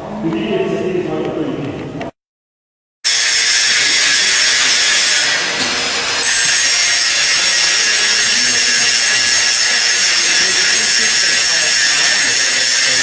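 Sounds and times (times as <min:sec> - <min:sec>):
power tool running: 0:03.1 - 0:13.0.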